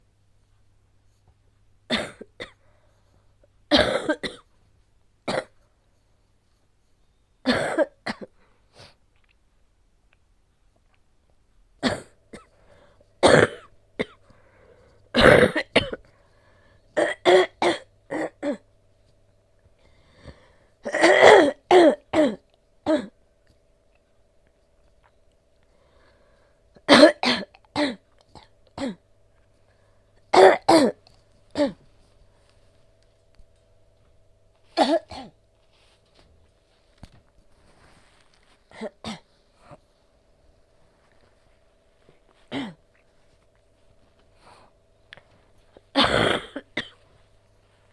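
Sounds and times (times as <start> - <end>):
woman coughing: 1.9 - 2.6, 3.7 - 4.5, 5.3 - 5.6, 7.4 - 8.4, 11.8 - 12.6, 13.2 - 14.2, 15.1 - 16.1, 17.0 - 18.6, 20.8 - 23.2, 26.8 - 29.0, 30.3 - 31.8, 34.8 - 35.4, 38.7 - 39.3, 42.5 - 42.8, 45.8 - 47.0
throat clearing: 42.5 - 42.9, 45.9 - 47.0.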